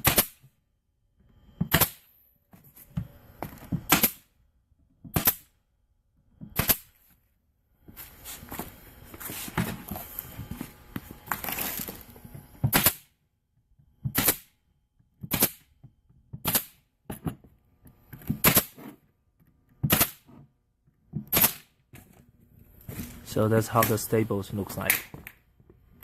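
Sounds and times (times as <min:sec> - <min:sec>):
handling and knocking: 0:17.0 - 0:19.5
staple gun firing: 0:19.8 - 0:20.2.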